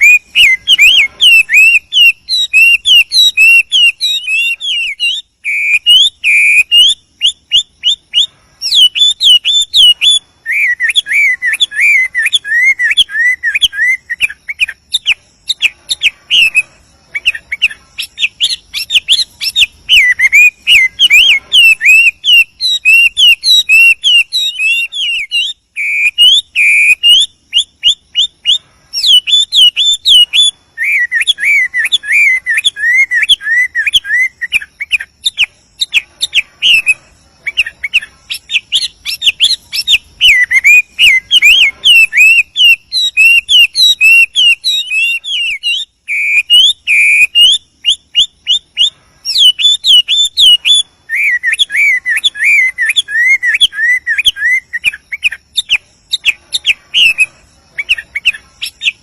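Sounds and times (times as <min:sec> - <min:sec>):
bird singing whistled phrases: 0:00.0 - 0:59.0.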